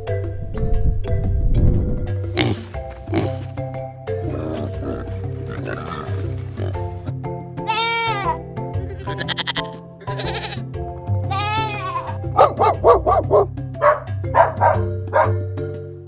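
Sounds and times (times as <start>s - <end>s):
background music: 0.0s - 16.0s
bleat-like animal calls: 7.6s - 10.7s, 11.3s - 12.3s.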